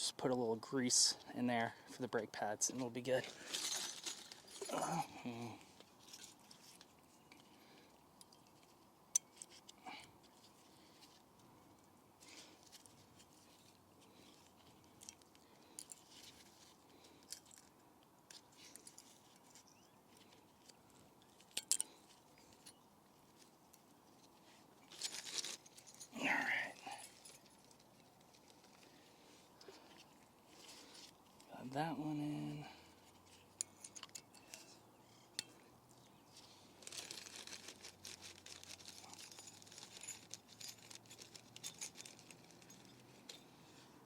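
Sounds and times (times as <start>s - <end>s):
small metallic clicks and taps: 33.6s - 35.6s.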